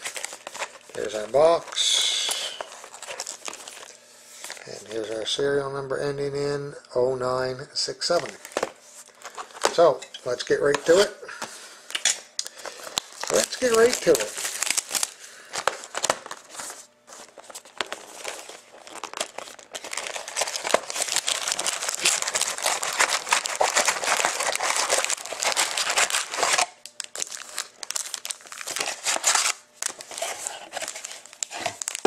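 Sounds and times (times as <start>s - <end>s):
plastic wrapping crinkling and tearing: 0.0s - 5.1s, 11.9s - 32.0s.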